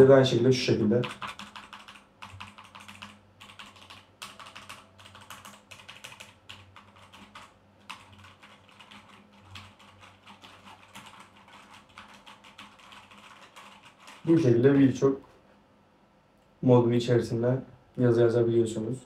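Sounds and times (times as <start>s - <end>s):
typing on mechanical keyboard: 1.0s - 14.4s.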